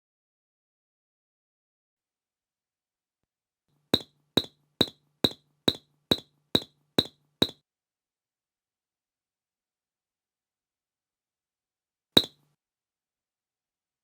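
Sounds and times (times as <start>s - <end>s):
light clinking taps: 4.0s - 7.6s.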